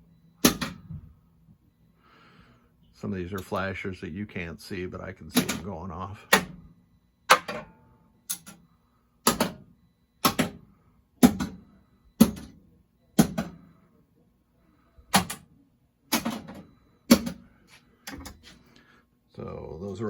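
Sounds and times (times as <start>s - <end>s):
pinball solenoid clacking: 0.4s - 0.8s, 5.3s - 5.7s, 7.3s - 7.7s, 9.2s - 9.6s, 10.2s - 10.6s, 11.2s - 11.6s, 15.1s - 15.5s, 16.1s - 17.4s.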